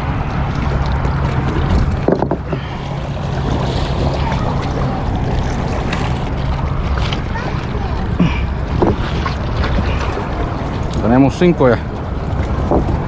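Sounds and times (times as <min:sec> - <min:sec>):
water noise: 0:00.0 - 0:13.0
wind: 0:00.0 - 0:13.0.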